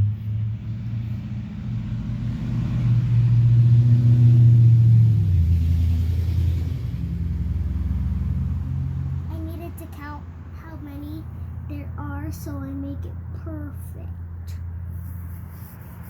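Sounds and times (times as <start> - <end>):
vehicle engine rumble: 0.0 - 16.0.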